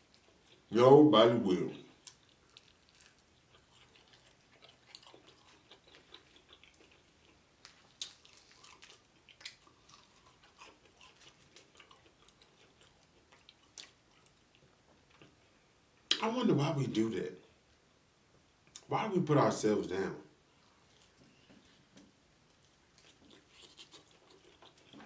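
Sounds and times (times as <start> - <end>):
person chewing food: 0.0 - 0.7, 1.9 - 16.2, 20.5 - 25.0.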